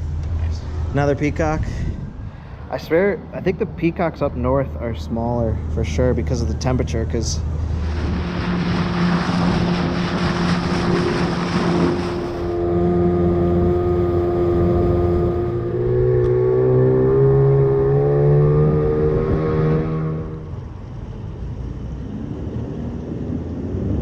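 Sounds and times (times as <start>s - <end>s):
engine passing close: 0.0s - 24.0s
rushing noise: 7.4s - 20.8s.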